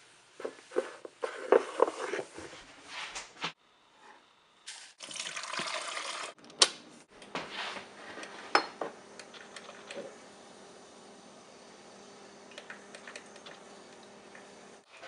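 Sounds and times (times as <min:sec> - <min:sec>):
water running: 0:04.8 - 0:06.4
dishes clinking: 0:08.5 - 0:08.9.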